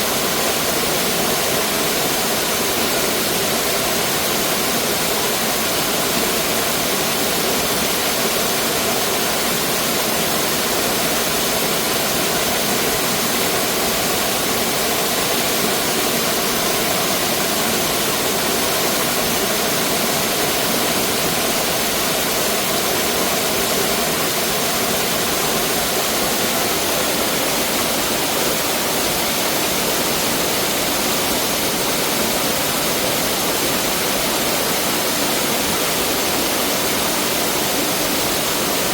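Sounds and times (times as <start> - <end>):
stream water rushing over rocks: 0.0 - 38.9.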